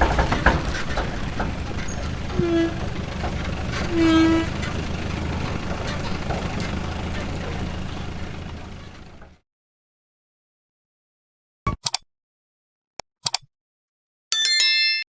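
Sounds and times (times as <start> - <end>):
truck engine running: 0.0 - 9.4.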